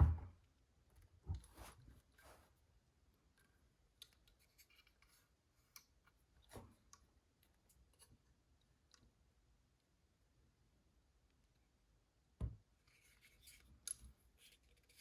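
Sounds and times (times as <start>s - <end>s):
small clicks and handling sounds: 3.3s - 9.2s, 12.8s - 15.0s.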